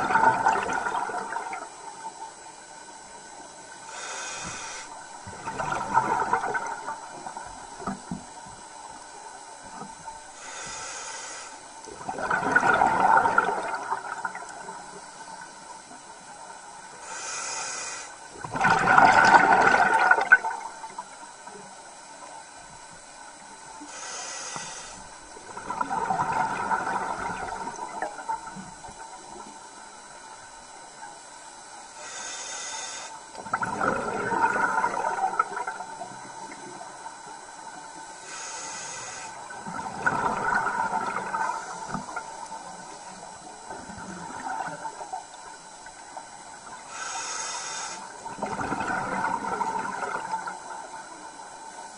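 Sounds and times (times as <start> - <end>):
exhaled bubbles underwater: 0.0 - 10.4, 11.8 - 16.8, 18.3 - 21.6, 25.0 - 31.5, 33.3 - 38.2, 39.3 - 47.1, 48.0 - 51.9
regulator inhale hiss: 3.8 - 5.0, 10.3 - 11.8, 16.9 - 18.3, 23.8 - 25.2, 31.9 - 33.3, 38.1 - 39.6, 46.8 - 48.3.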